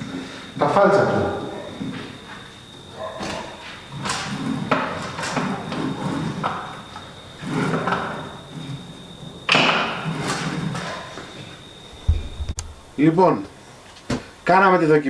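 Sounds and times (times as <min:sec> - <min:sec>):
saw clunks and clicks: 0:12.0 - 0:13.0.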